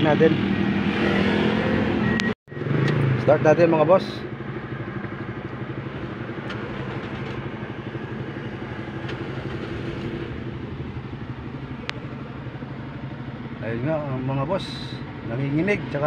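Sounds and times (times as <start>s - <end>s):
car engine idling roughly: 4.1s - 13.6s.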